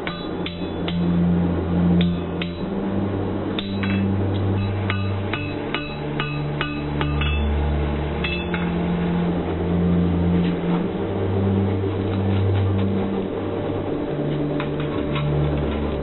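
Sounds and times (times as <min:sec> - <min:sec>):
hammer ringing on anvil: 0:00.0 - 0:01.1, 0:02.0 - 0:02.7, 0:03.6 - 0:07.6, 0:08.2 - 0:08.7
low hum shifting in pitch: 0:00.0 - 0:16.0.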